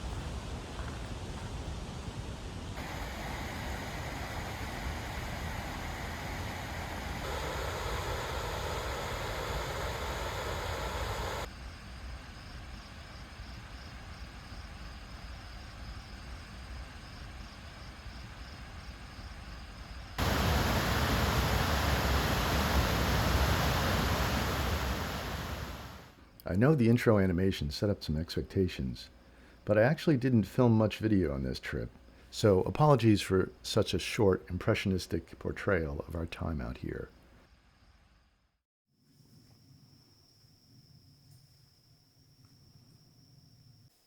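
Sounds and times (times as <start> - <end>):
steady outdoor rushing noise: 2.8 - 11.5, 20.2 - 26.2.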